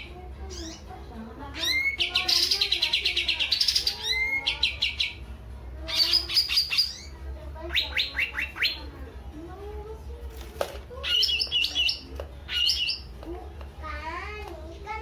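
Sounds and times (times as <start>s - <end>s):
bird chirping and trilling: 0.0s - 0.9s, 1.5s - 8.9s, 11.0s - 13.1s.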